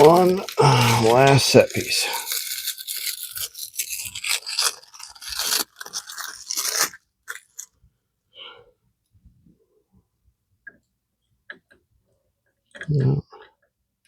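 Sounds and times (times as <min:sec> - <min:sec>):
packaging crinkling and scraping: 0:00.0 - 0:07.8.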